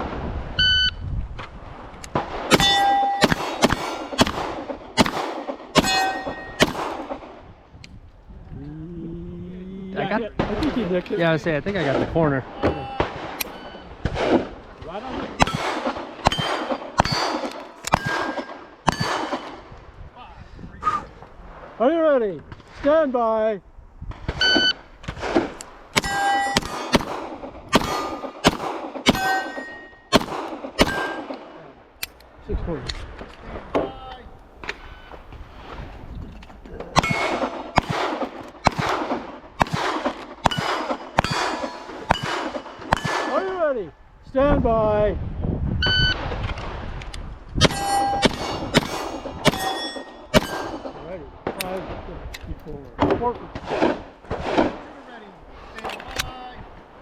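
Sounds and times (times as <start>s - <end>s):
pistol shots: 2.2s - 7.3s, 15.4s - 19.7s, 25.1s - 31.6s, 37.0s - 43.6s, 47.6s - 51.7s
clang of struck steel plates: 2.5s - 3.8s, 5.8s - 6.8s, 16.3s - 19.6s, 26.0s - 27.0s, 29.1s - 30.2s, 37.0s - 37.5s, 40.4s - 43.5s, 47.6s - 51.0s
shot timer beep: 24.4s - 24.8s.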